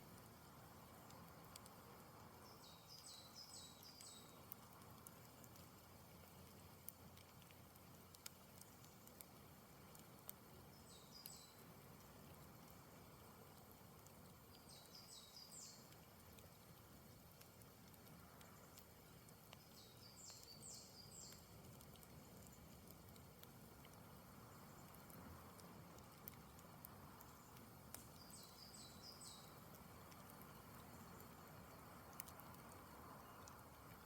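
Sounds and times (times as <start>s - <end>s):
campfire crackling: 0.0s - 34.0s
bird singing: 2.4s - 4.4s, 10.7s - 11.6s, 14.6s - 15.9s, 19.6s - 21.4s, 28.1s - 29.6s.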